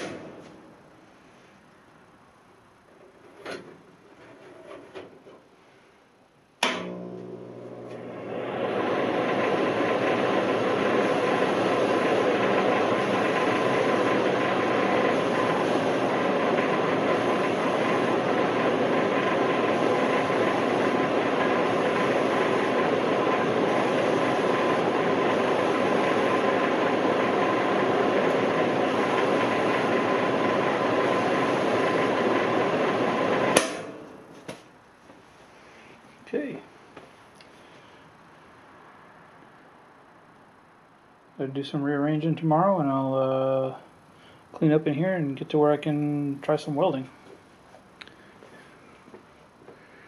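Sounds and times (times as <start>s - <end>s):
welder humming: 6.6s - 34.2s.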